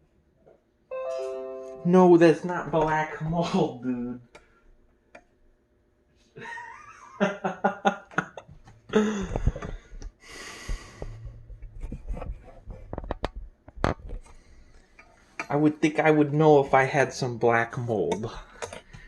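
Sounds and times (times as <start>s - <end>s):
hissing breath out: 9.0s - 11.3s.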